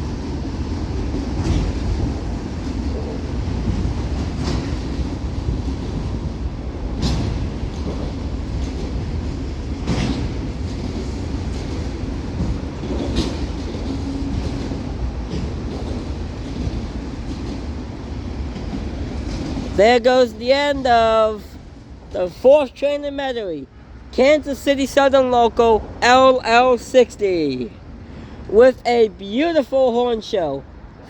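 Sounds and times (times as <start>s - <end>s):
train wheels clicking: 0.0s - 23.4s
train rumbling on rails: 0.0s - 31.0s.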